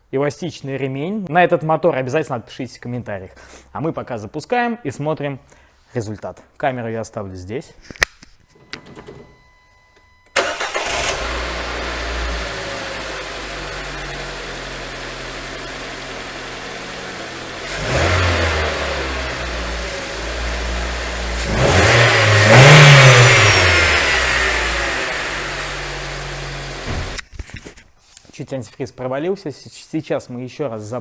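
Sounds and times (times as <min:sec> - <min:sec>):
car engine starting and idling: 0:08.7 - 0:27.2
car engine revving: 0:10.4 - 0:27.2.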